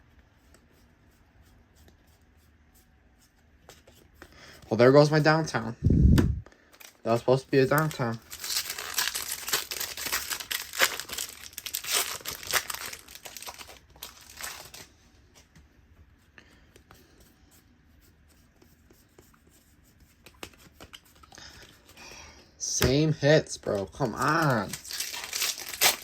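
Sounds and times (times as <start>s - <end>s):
wrapper tearing and crinkling: 6.7s - 14.9s, 23.7s - 26.0s.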